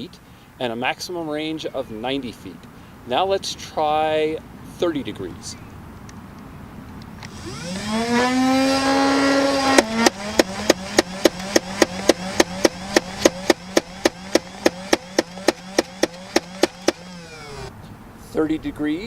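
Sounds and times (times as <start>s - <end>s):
toy blaster flywheel whine: 7.3s - 17.7s
toy blaster rapid firing: 7.3s - 17.7s.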